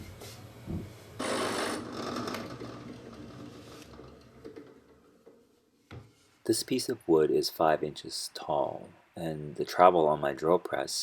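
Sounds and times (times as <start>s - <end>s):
power tool cutting wood: 1.2s - 2.0s.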